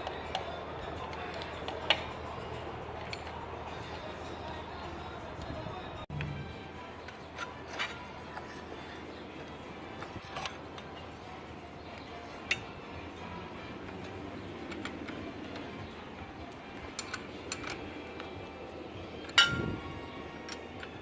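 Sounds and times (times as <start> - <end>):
metallic clinks of hand tools: 16.9 - 18.3
ringing metal clank: 19.4 - 19.8.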